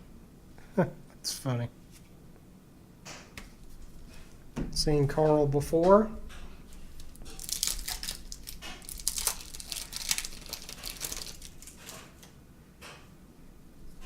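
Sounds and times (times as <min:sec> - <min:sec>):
plastic wrapper crinkling and tearing: 0:06.7 - 0:12.3.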